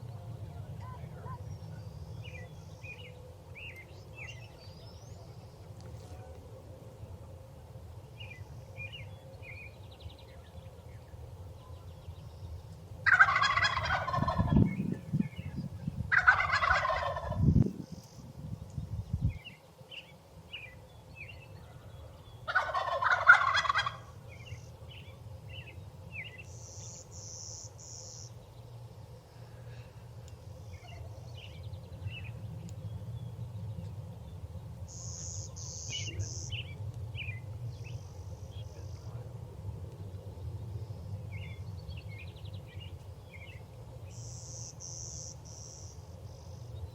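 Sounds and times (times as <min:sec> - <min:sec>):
wild turkey gobbling: 0:13.1 - 0:14.6, 0:16.1 - 0:17.4, 0:22.5 - 0:24.2.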